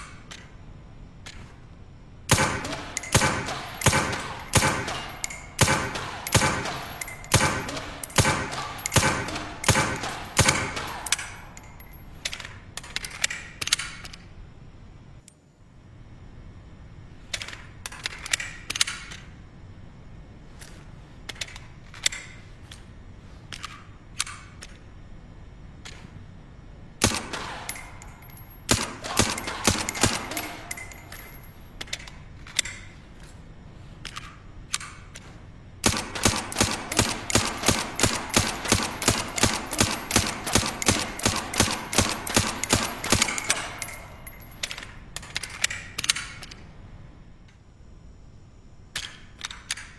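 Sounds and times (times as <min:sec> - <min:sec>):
suppressed pistol gunshots: 0:02.3 - 0:11.1.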